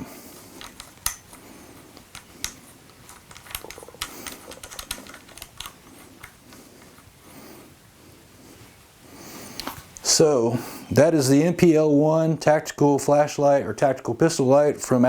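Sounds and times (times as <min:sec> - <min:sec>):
light clicks and taps of handling: 0:00.5 - 0:07.1.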